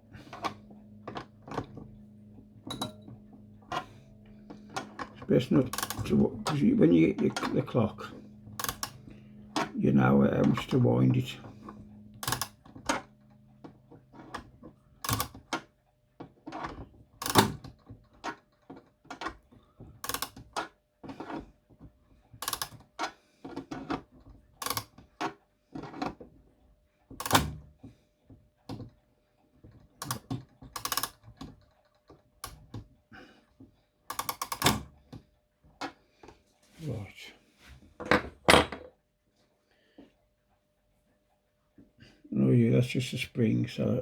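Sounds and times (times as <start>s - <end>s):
clock winding ratchet clicks: 3.7s - 15.7s, 16.5s - 19.4s, 20.0s - 21.4s, 22.4s - 23.9s, 24.6s - 25.2s, 27.2s - 27.6s, 29.7s - 32.8s, 34.1s - 34.9s.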